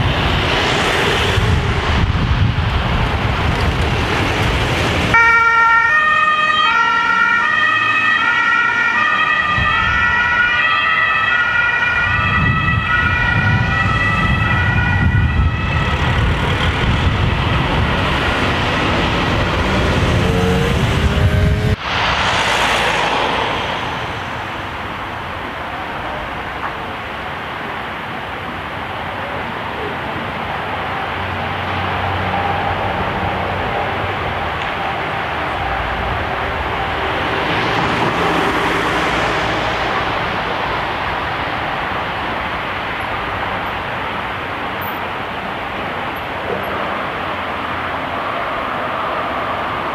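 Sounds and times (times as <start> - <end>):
traffic noise: 0.0 - 49.9
two-tone emergency sirens: 5.1 - 17.0
vehicle rushing past: 15.5 - 25.5, 31.2 - 42.2.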